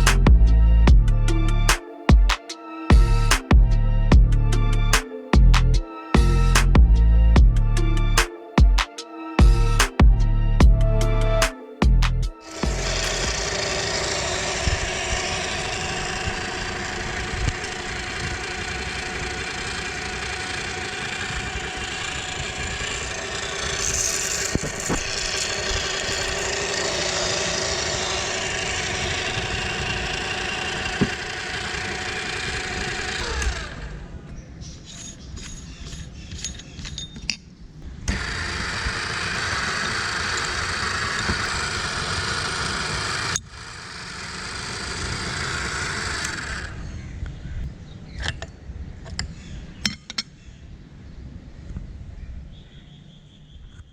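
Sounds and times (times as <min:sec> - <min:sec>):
meat grinder motor running: 0:12.4 - 0:34.0, 0:38.1 - 0:46.8.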